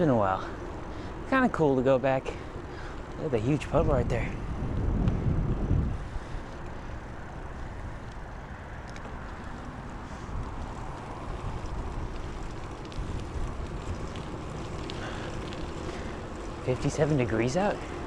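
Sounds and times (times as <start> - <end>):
bicycle tyres rolling: 0.0 - 18.0
wind rush: 3.4 - 16.6.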